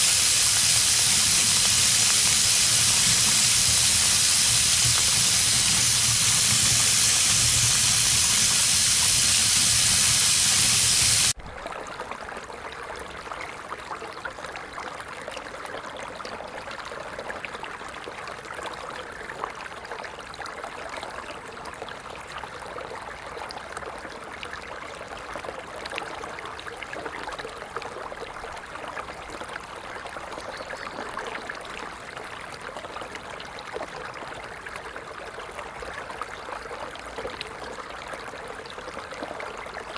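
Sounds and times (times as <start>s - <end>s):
shallow stream trickling: 0.0s - 11.4s
tap water running into sink: 0.0s - 11.4s.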